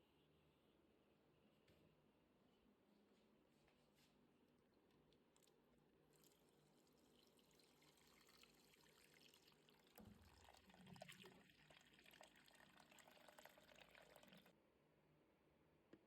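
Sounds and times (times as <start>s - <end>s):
water pouring and trickling: 6.1s - 14.5s.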